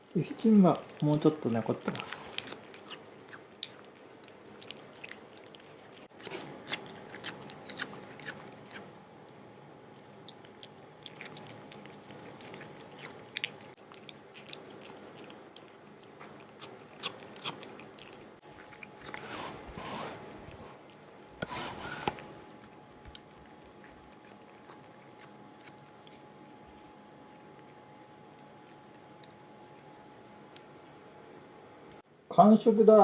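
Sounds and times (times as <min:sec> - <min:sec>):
cat chewing wet food: 0:00.0 - 0:08.9, 0:09.9 - 0:31.4.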